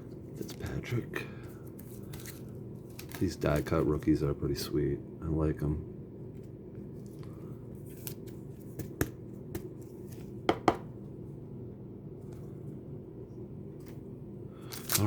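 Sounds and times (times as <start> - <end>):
steady low hum: 0.0 - 15.0
cards clicking and tapping: 1.7 - 4.2, 7.9 - 10.9.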